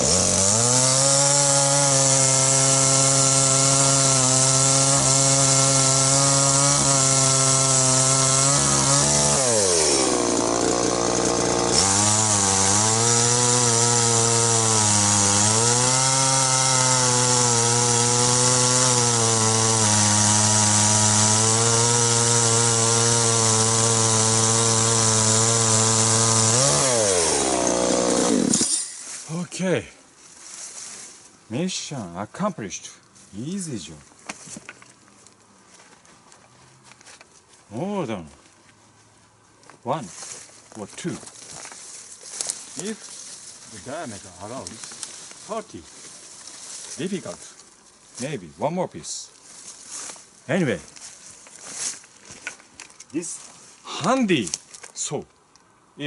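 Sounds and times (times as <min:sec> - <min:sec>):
chainsaw cutting through log: 0:00.0 - 0:28.9.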